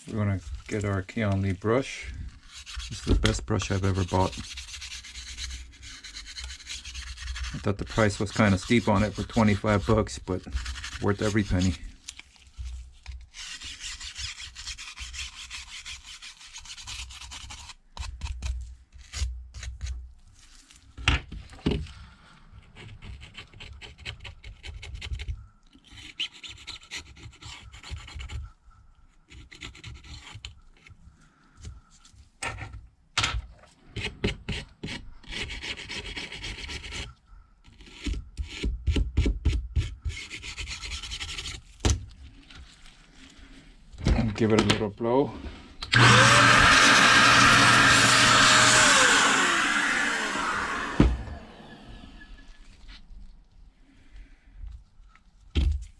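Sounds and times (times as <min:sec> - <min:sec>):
stiff brush scrubbing: 0:00.0 - 0:20.9, 0:40.0 - 0:43.6.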